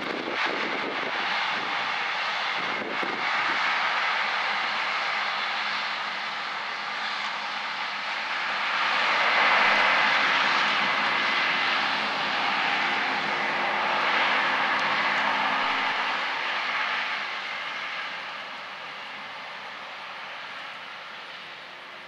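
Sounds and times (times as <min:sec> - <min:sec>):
diesel engine hum: 0:00.0 - 0:22.0.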